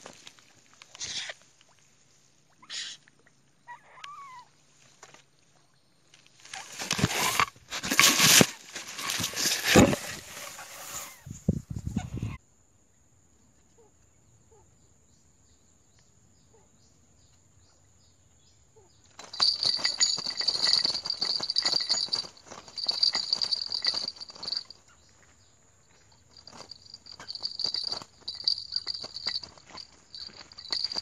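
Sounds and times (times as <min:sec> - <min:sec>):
bird rattling call: 0:19.2 - 0:24.8, 0:26.3 - 0:31.0.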